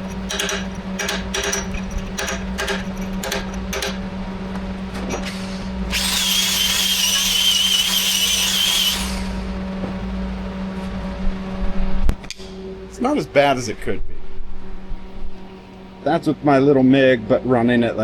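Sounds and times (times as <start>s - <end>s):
steady low hum: 0.0s - 18.0s
power tool whining: 5.9s - 9.4s.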